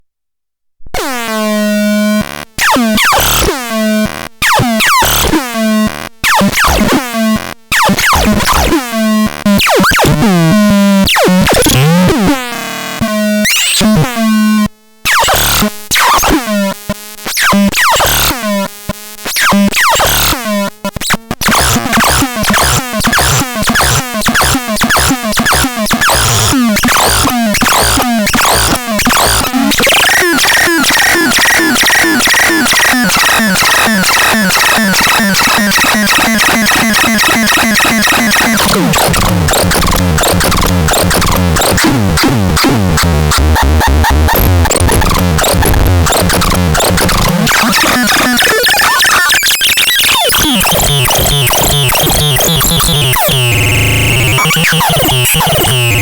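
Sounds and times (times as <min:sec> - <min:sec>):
fast stuttering synth pulses: 0:21.5 - 0:56.0.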